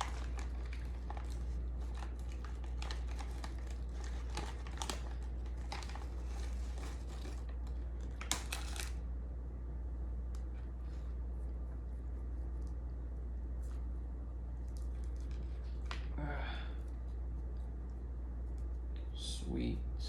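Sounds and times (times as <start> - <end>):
crispy snack crackling: 0.0 - 9.0, 14.5 - 18.0
steady low hum: 0.0 - 20.0.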